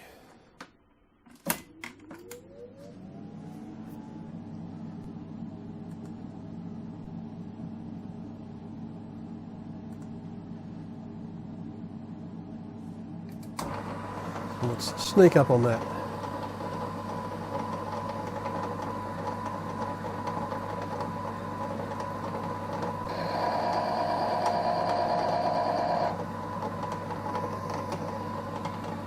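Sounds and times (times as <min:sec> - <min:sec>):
lathe motor whining: 0:13.6 - 0:29.0.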